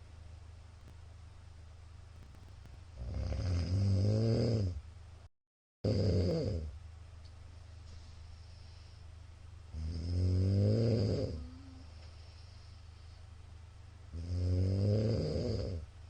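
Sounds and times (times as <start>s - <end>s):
room noise: 2.1s - 4.8s
man snoring loudly: 3.0s - 4.8s, 5.8s - 6.7s, 9.8s - 11.5s, 14.2s - 15.8s
quiet breathing: 7.6s - 9.3s, 11.2s - 13.6s.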